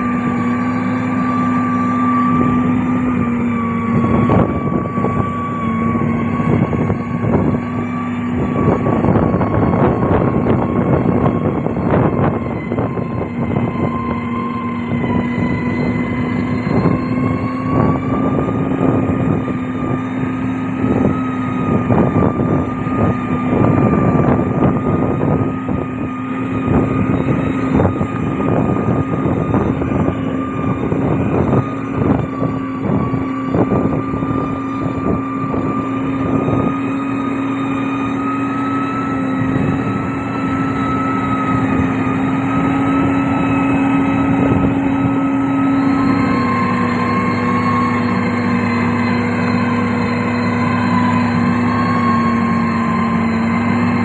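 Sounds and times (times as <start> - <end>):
heavy diesel machine running: 0.0 - 54.0.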